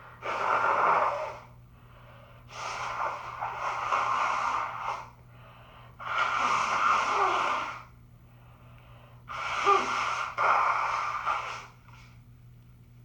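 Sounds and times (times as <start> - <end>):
woman breathing: 0.9 - 3.1, 3.9 - 11.8.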